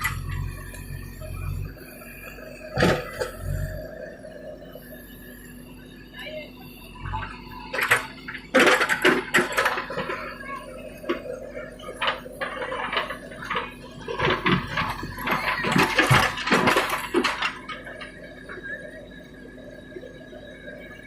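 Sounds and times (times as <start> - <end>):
metallic clanks and clatter: 11.0 - 18.2.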